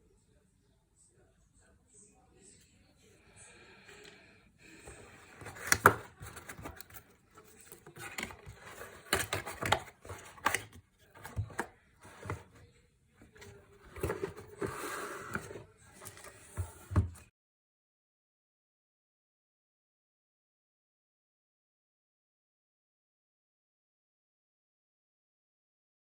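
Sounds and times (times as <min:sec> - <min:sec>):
packaging rustling: 0:04.9 - 0:12.4.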